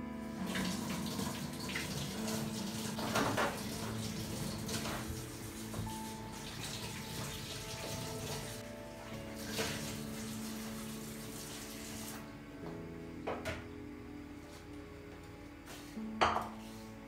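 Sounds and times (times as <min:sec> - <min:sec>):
soft background music: 0:00.0 - 0:17.0
water running from a tap: 0:00.4 - 0:08.6, 0:09.3 - 0:12.2.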